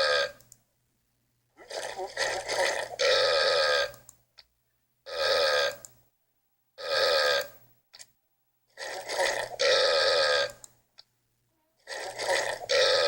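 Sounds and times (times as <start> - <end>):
long burps: 1.6 - 4.0, 8.8 - 10.6, 11.9 - 13.0.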